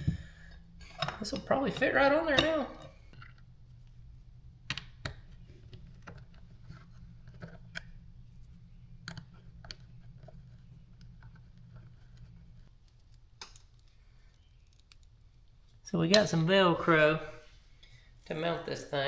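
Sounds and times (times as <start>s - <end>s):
low steady hum: 0.0s - 19.0s
plastic parts clicking and tapping: 4.7s - 15.2s.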